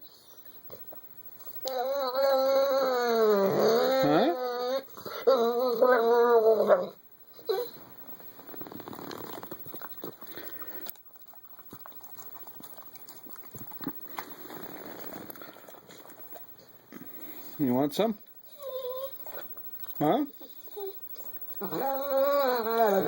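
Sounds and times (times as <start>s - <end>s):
dog whimpering: 1.4s - 7.8s, 18.5s - 23.0s
dog breathing: 8.4s - 17.8s.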